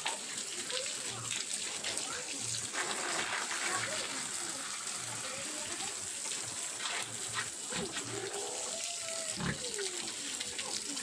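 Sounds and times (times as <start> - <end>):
water running: 0.0 - 11.0
pig grunts and calls: 7.6 - 10.1.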